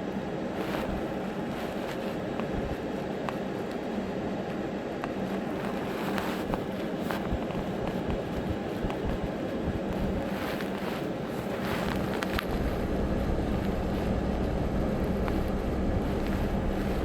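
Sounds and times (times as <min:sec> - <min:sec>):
wind rumbling on microphone: 0:00.4 - 0:03.2, 0:05.2 - 0:17.0
vehicle engine idling: 0:12.4 - 0:17.0.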